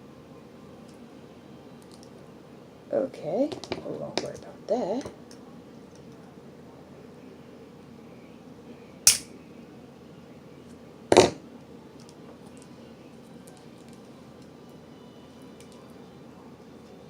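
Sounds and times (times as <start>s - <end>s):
sharp metal clacks: 9.1s - 9.3s.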